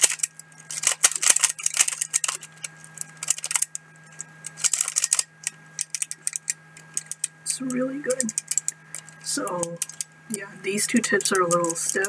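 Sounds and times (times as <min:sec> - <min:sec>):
plastic puzzle clicks: 0:00.0 - 0:10.1, 0:11.0 - 0:12.0
low microphone hum: 0:00.0 - 0:12.0.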